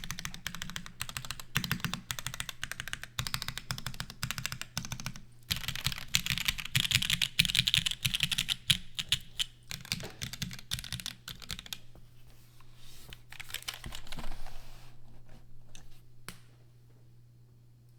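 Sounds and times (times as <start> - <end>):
mechanical keyboard typing: 0.0 - 11.9, 13.3 - 14.2.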